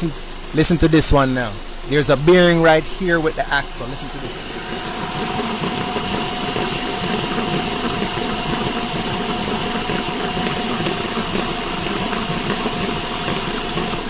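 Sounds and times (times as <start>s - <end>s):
faint constant tone: 0.0s - 10.0s
worn wheel bearing rumbling: 3.7s - 14.0s.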